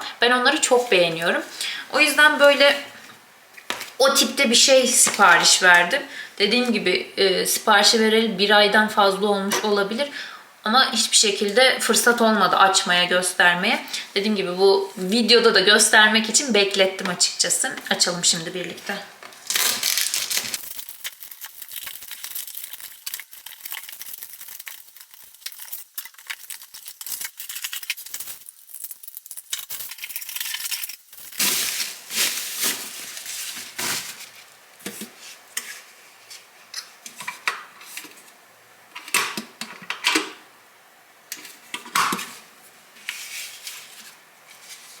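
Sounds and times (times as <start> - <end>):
cardboard and plastic rustling: 18.7 - 28.5, 29.8 - 36.5, 41.5 - 45.0.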